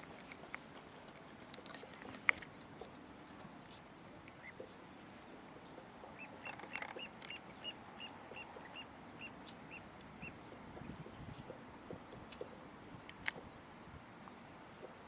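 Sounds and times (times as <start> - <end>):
faint clicks: 0.0 - 4.7, 5.7 - 8.8.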